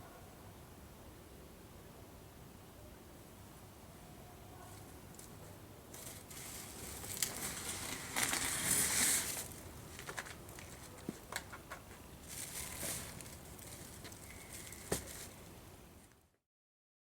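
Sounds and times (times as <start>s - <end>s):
crinkling rustling handling noise: 4.7s - 16.2s.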